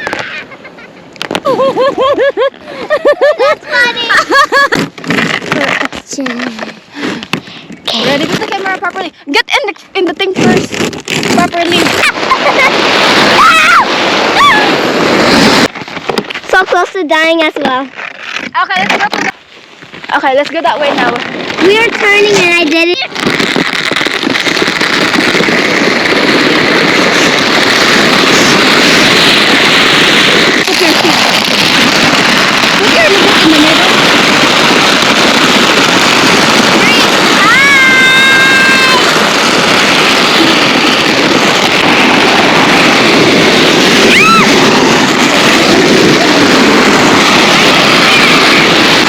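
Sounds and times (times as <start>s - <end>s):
person squealing: 0.0s - 4.4s, 13.3s - 14.8s, 37.3s - 39.1s, 44.0s - 44.7s
sled scraping over snow: 0.0s - 49.0s
air rushing past microphone: 10.2s - 17.9s, 19.4s - 49.0s.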